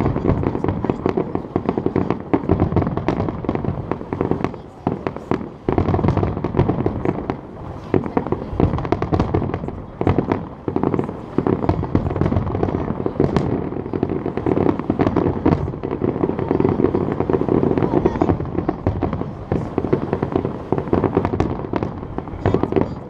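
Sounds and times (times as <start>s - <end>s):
fireworks bangs and crackles: 0.0s - 23.0s.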